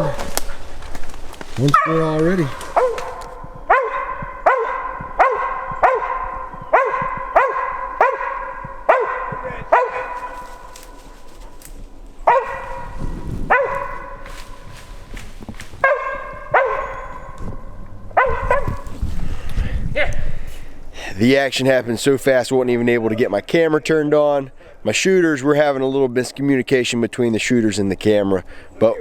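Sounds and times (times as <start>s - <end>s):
dog barking: 2.8s - 10.7s, 12.3s - 14.6s, 15.8s - 17.4s, 18.2s - 18.9s.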